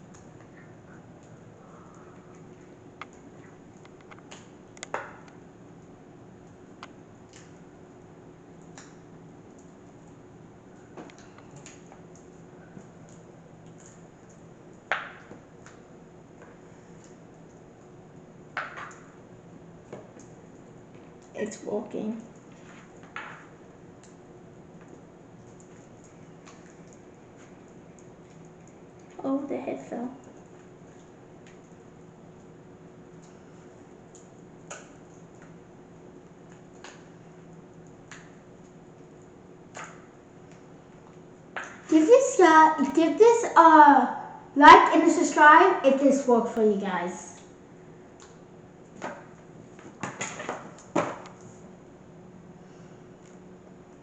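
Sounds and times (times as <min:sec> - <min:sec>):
glue clicks and crackles: 0:00.0 - 0:07.6, 0:10.8 - 0:18.0
faint steady hum: 0:00.0 - 0:54.0.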